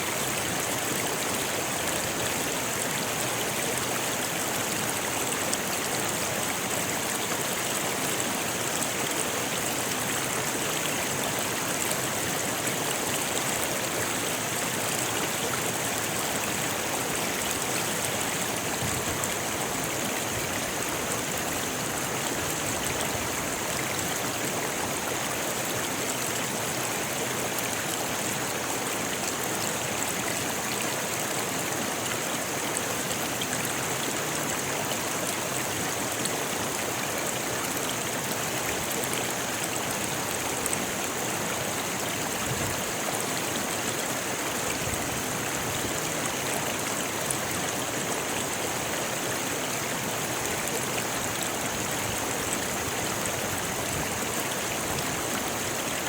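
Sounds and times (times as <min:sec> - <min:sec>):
river rushing over stones: 0:00.0 - 0:56.0.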